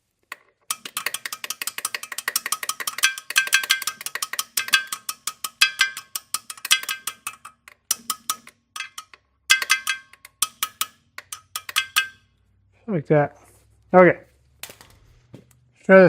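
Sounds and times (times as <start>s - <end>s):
metal tool tapping metal part: 0.3s - 12.4s.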